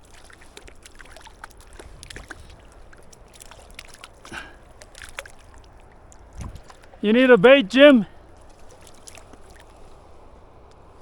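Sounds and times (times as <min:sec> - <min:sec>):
fish splashing at water surface: 0:00.0 - 0:07.0, 0:08.2 - 0:10.2
river rushing: 0:05.2 - 0:09.7.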